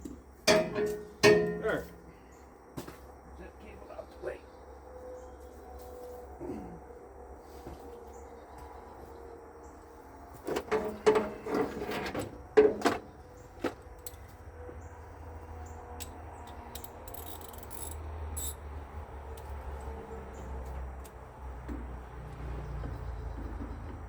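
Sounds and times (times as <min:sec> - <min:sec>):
tools knocking and clanking: 0:00.4 - 0:02.0, 0:12.1 - 0:14.1.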